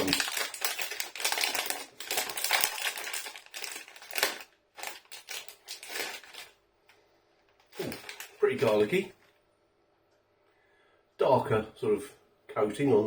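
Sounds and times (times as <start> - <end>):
plastic snack packet crinkling: 0.0 - 6.6, 7.6 - 9.2.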